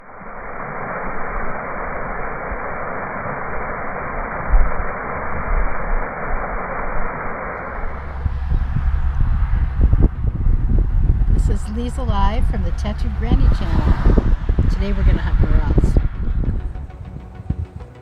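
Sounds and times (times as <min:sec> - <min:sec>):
muffled static hiss: 0:00.0 - 0:17.1
faint low rumble: 0:00.0 - 0:18.0.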